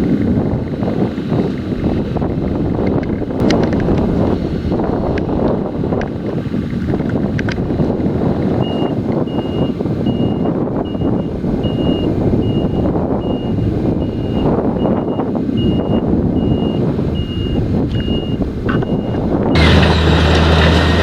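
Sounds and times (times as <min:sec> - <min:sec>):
heavy farm machinery running: 0:00.0 - 0:21.0
reversing alarm beeping: 0:08.6 - 0:20.4.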